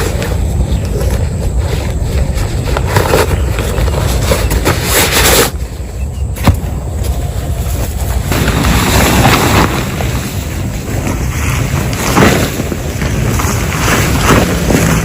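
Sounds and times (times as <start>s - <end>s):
wind rumbling on microphone: 0.0s - 15.0s.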